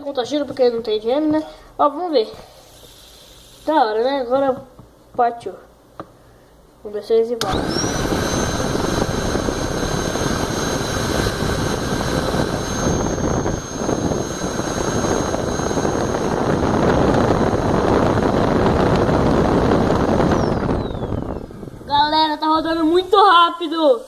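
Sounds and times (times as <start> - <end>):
air pump blowing air: 7.4 - 22.2
high motor whine: 7.4 - 23.2.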